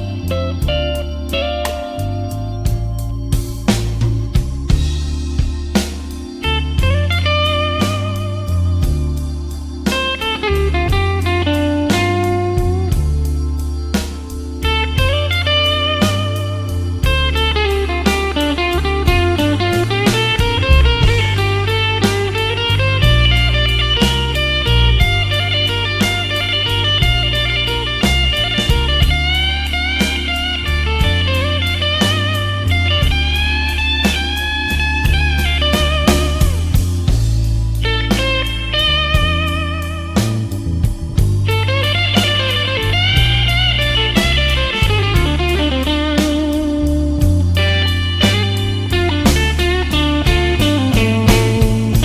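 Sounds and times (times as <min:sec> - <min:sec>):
bass line: 0:00.0 - 0:52.0
lead guitar solo: 0:00.0 - 0:52.0
steady drum beat: 0:00.0 - 0:52.0
drum beat: 0:18.1 - 0:25.4, 0:39.2 - 0:52.0.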